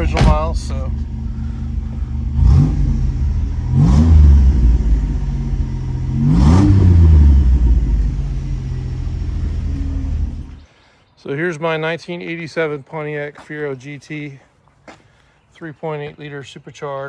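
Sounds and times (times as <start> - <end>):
car engine idling and revving: 0.0 - 10.6.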